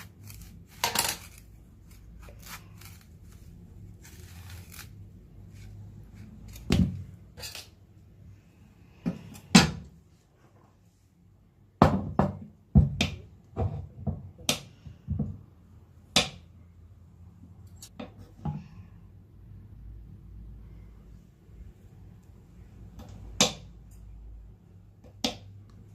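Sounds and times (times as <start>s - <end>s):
objects knocking and clattering: 0.8s - 1.4s.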